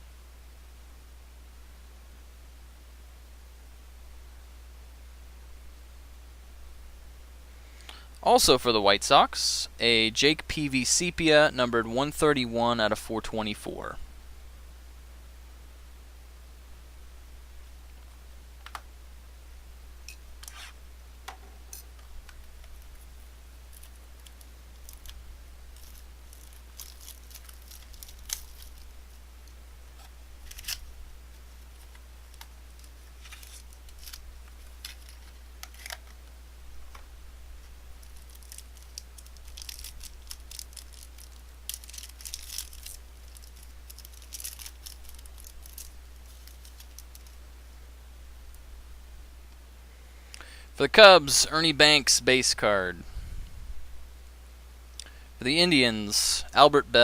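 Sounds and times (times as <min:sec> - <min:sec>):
steady low hum: 0:00.0 - 0:57.0
cards and packaging rustling: 0:22.2 - 0:29.0, 0:29.9 - 0:36.2, 0:38.0 - 0:47.4.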